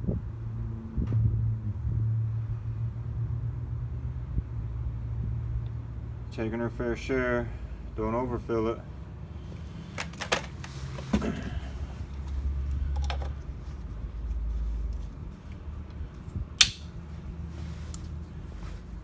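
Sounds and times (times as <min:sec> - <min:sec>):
sharp snap of cap: 0:16.6 - 0:16.9.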